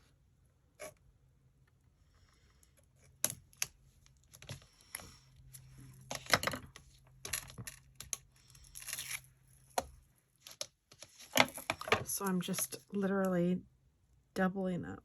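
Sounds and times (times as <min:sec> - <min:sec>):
hands handling foam pieces: 0:03.0 - 0:12.9.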